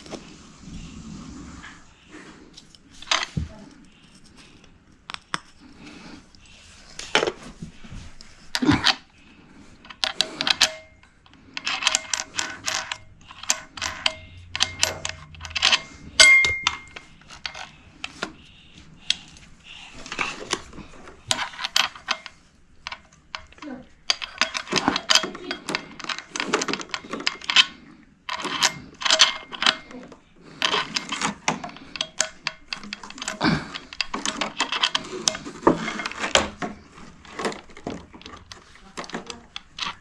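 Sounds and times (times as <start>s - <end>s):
short metallic ring: 16.2s - 17.0s.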